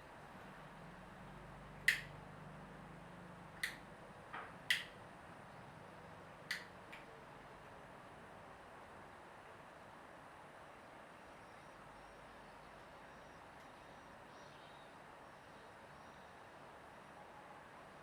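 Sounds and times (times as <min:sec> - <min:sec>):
short sharp clicks: 0:01.9 - 0:02.2, 0:03.6 - 0:03.8, 0:04.7 - 0:05.0, 0:06.5 - 0:06.7.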